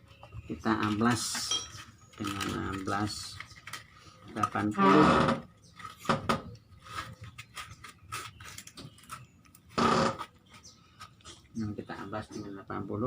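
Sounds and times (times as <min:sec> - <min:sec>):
plastic parts clicking and knocking: 0:00.1 - 0:11.5
sandpaper being handled: 0:06.8 - 0:09.2.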